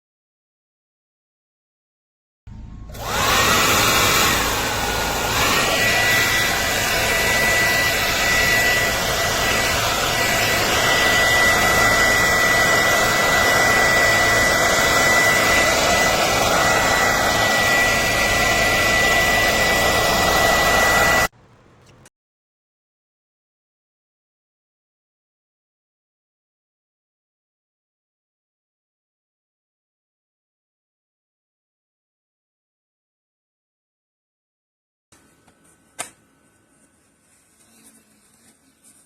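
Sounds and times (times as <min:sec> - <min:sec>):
hair dryer running: 0:02.9 - 0:21.3.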